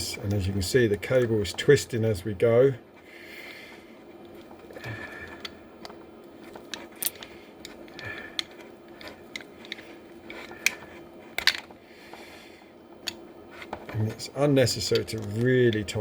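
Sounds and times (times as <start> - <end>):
faint steady hum: 0.0 - 16.0
hand tool clicks and scrapes: 5.3 - 11.7.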